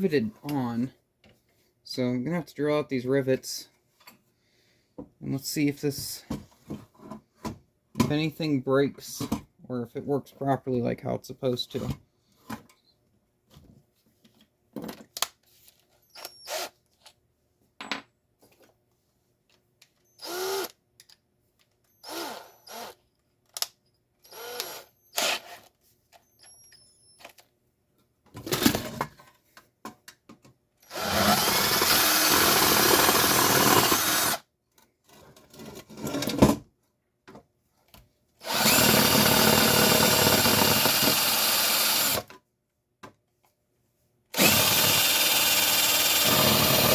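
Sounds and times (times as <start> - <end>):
clicks and knocks of parts handled: 14.2 - 15.9, 20.9 - 21.9, 23.2 - 23.9
power drill drilling rivets: 16.0 - 16.8, 20.1 - 20.8, 21.9 - 23.0, 24.2 - 25.7, 30.8 - 34.4, 38.4 - 42.3, 44.4 - 46.9.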